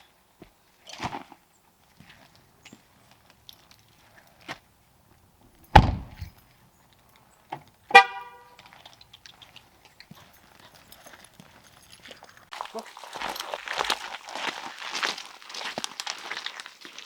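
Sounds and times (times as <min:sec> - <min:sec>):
car door shutting: 0:05.7 - 0:06.3
car horn chirp: 0:07.9 - 0:08.6.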